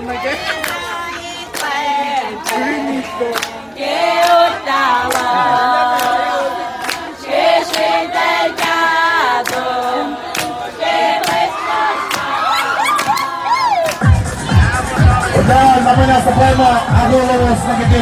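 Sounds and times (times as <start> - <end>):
group singing in harmony: 0.0 - 18.0.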